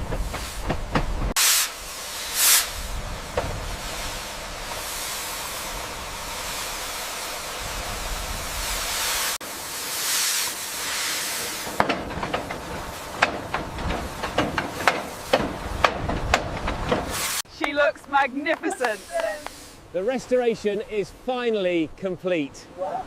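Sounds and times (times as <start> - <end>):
sharp clicks and knocks: 0.0 - 1.4, 11.7 - 17.3
steam locomotive hissing: 0.0 - 17.5, 18.4 - 21.3.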